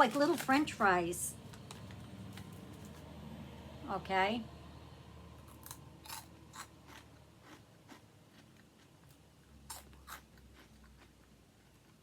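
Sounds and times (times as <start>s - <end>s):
crunching snack chewing: 5.4s - 12.0s.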